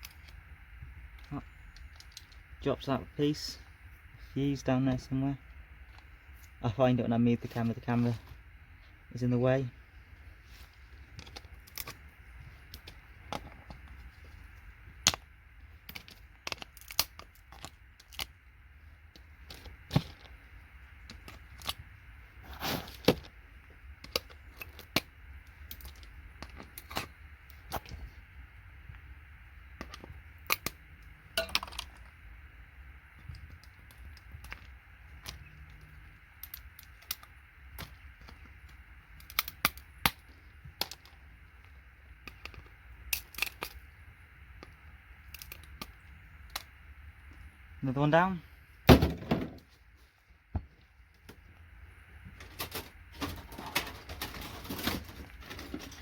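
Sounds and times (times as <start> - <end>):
steady low hum: 0.0 - 56.0
components cracking off circuit boards: 14.9 - 18.4, 33.2 - 41.1, 44.6 - 46.8, 52.3 - 56.0
small parts clattering: 52.3 - 56.0.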